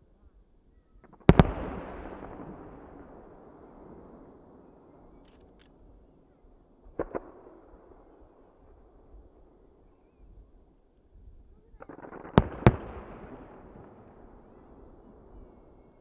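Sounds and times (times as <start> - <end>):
firework bang with rolling echo: 1.0 - 5.2, 6.0 - 9.3, 11.8 - 16.0
sharp firework cracks: 6.9 - 7.8.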